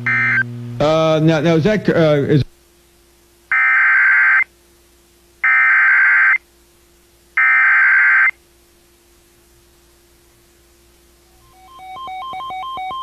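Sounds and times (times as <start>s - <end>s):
faint steady hum: 0.0s - 13.0s
shrill data tones: 3.5s - 4.5s, 5.4s - 6.4s, 7.4s - 8.4s, 11.4s - 13.0s.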